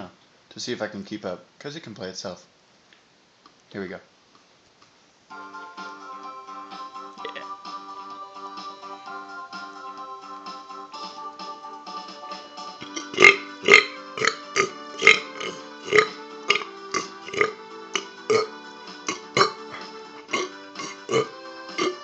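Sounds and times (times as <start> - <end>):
piano tune: 5.3 - 22.0
person burping: 12.8 - 18.5, 19.1 - 22.0.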